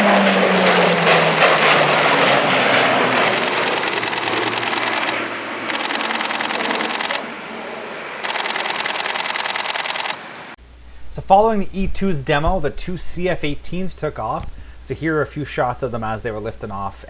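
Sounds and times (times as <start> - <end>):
turboprop aircraft passing: 0.0 - 10.6
camera shutter bursts: 0.6 - 2.4, 3.1 - 7.2, 8.2 - 10.2.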